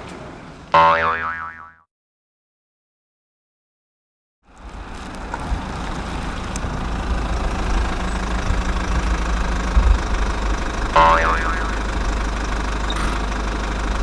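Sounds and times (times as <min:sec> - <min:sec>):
warbling horn blast: 0:00.8 - 0:01.2, 0:10.8 - 0:12.1
truck engine idling: 0:04.5 - 0:14.0.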